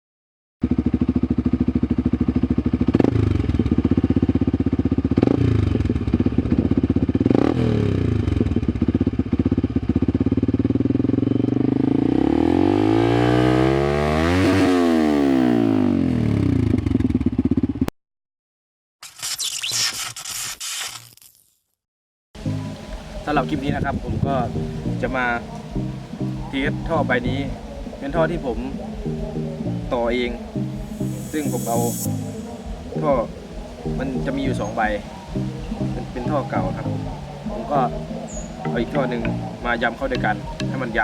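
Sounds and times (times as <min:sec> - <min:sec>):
motorcycle engine idling: 0:00.6 - 0:11.9, 0:16.5 - 0:17.9, 0:22.4 - 0:31.3, 0:32.1 - 0:41.0
motorcycle throttle blips: 0:32.0 - 0:41.0.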